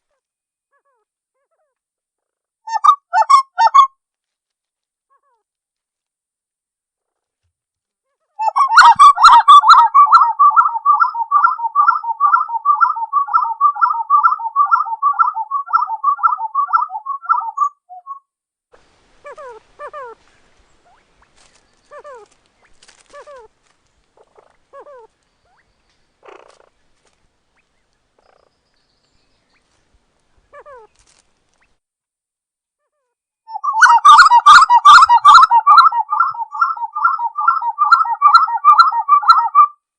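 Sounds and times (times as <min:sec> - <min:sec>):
bird whistled rolling song: 0:08.4 - 0:18.2, 0:33.5 - 0:39.8.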